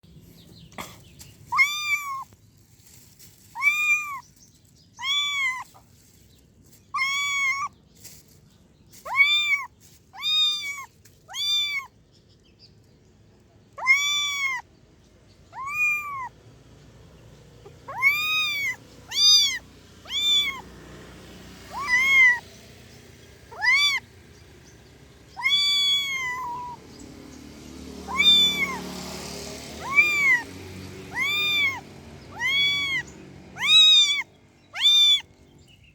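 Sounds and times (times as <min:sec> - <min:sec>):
kitten meowing: 0:01.5 - 0:02.4, 0:03.5 - 0:04.3, 0:05.0 - 0:05.8, 0:06.9 - 0:07.8, 0:09.0 - 0:12.0, 0:13.7 - 0:14.7, 0:15.4 - 0:16.4, 0:17.6 - 0:20.7, 0:21.7 - 0:22.4, 0:23.5 - 0:24.1, 0:25.3 - 0:26.8, 0:28.1 - 0:28.8, 0:29.8 - 0:30.5, 0:31.1 - 0:35.3.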